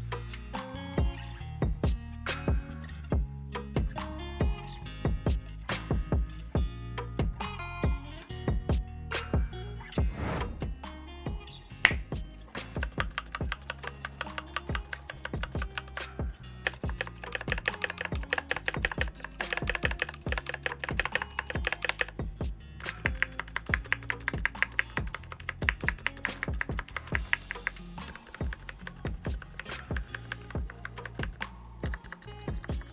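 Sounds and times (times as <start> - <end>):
background music: 0.0 - 32.9
mechanical keyboard key clacks: 12.8 - 16.1, 16.7 - 22.2, 22.9 - 27.4.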